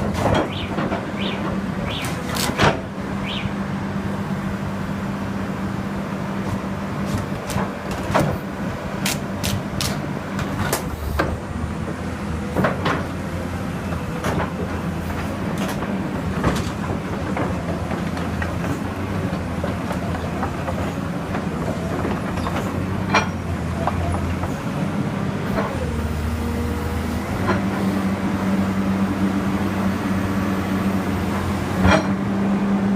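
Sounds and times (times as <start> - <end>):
excavator diesel engine running: 0.0 - 32.9
metallic clanks and knocks: 31.8 - 32.2.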